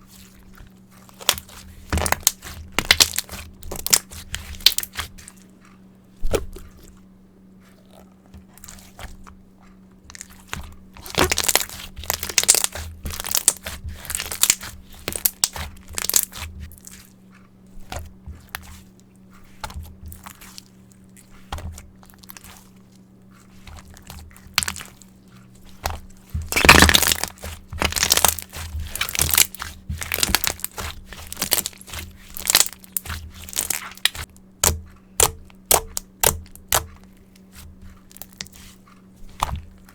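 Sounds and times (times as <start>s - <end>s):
slime squeezed by hand crackling: 1.1s - 5.3s, 10.1s - 17.0s, 25.7s - 39.6s.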